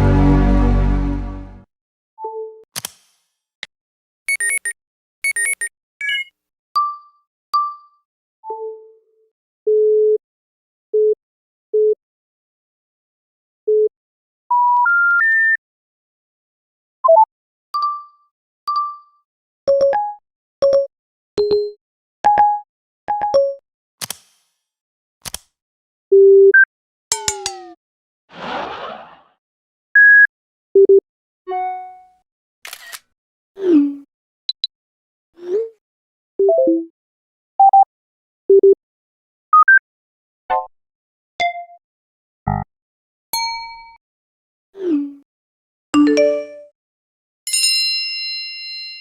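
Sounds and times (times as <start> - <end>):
click: 2.8 - 3.2, 24.0 - 24.5, 25.2 - 25.5
single electronic beeps: 4.3 - 6.3.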